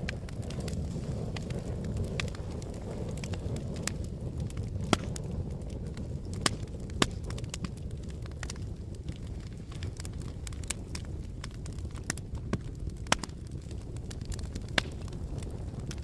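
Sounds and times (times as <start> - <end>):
wind rumbling: 0.0 - 16.0
wood fire crackling: 0.0 - 16.0.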